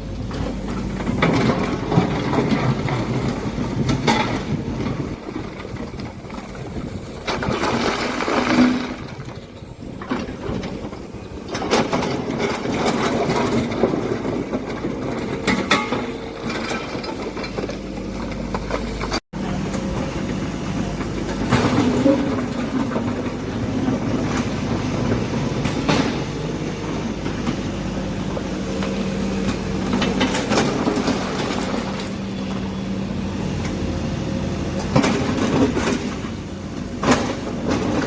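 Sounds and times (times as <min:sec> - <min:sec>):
excavator running: 0:00.0 - 0:38.0.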